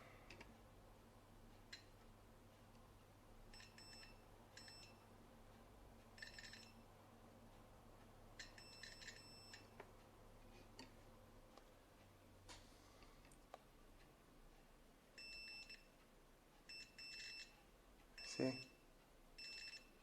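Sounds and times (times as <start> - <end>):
multimeter continuity beeping: 3.5 - 5.0, 6.2 - 6.9, 8.4 - 9.8, 15.1 - 16.0, 16.6 - 17.6, 19.4 - 20.0.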